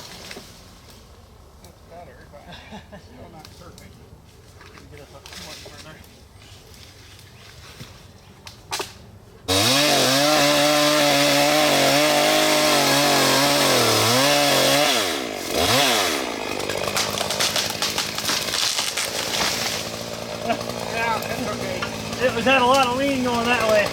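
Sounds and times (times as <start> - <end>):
chainsaw cutting wood: 8.7 - 23.9.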